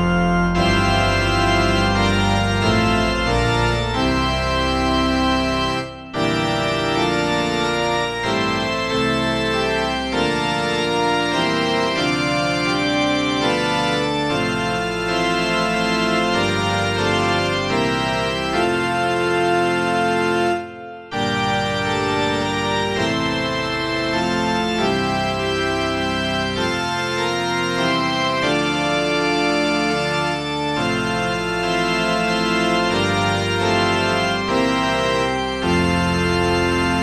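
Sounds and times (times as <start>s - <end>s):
organ playing sustained chords: 0.0s - 37.0s.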